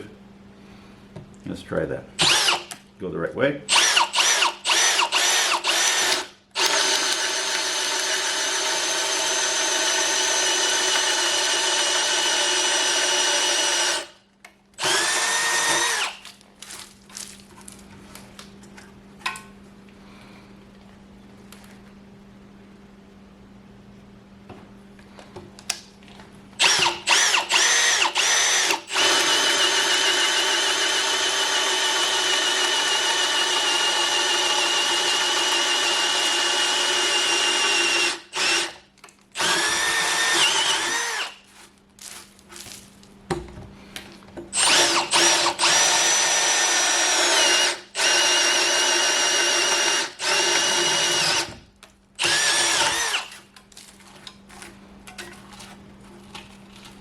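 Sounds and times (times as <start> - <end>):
electric drill boring into wood: 2.2 - 2.7, 3.7 - 14.2, 14.8 - 16.2, 26.6 - 38.8, 39.4 - 41.4, 44.6 - 51.6, 52.2 - 53.3.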